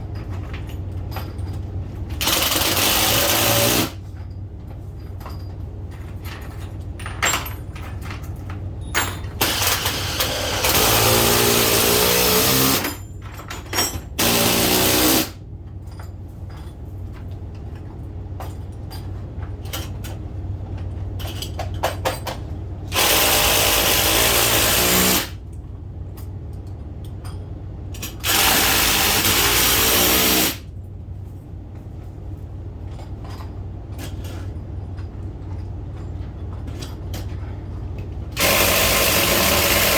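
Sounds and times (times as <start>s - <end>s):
steady low hum: 0.0s - 39.9s
power drill driving fasteners: 2.2s - 4.0s, 9.4s - 13.0s, 14.2s - 15.4s, 22.9s - 25.4s, 28.0s - 30.6s, 38.4s - 39.9s.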